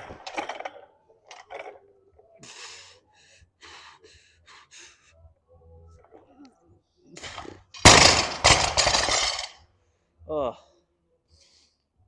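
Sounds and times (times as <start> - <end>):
person breathing hard: 2.4 - 5.2.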